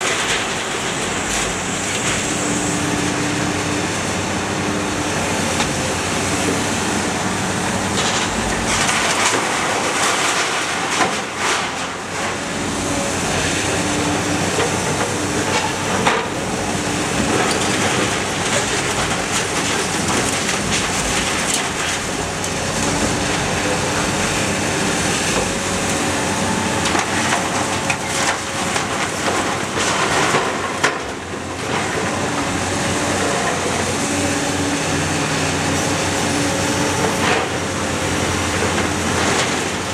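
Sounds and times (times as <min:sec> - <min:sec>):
car baler mechanical din: 0:00.0 - 0:39.9
machine humming: 0:11.9 - 0:31.6.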